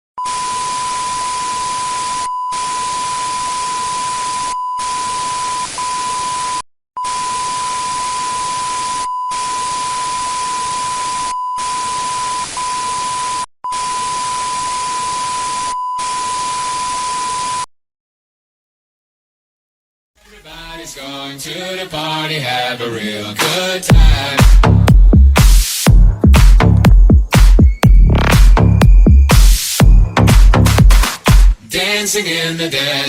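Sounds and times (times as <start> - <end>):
steady electronic beep: 26.9 - 30.9.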